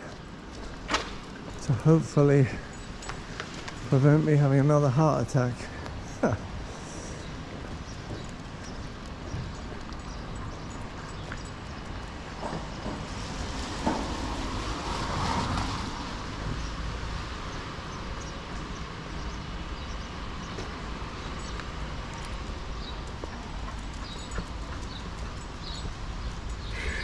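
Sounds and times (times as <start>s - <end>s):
street traffic: 0.0s - 27.0s
vehicle passing: 0.6s - 27.0s.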